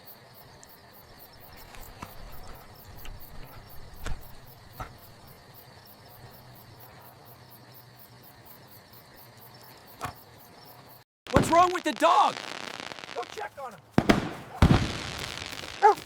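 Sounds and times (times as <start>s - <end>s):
crickets chirping: 0.0s - 16.0s
short sharp pops: 11.3s - 16.0s.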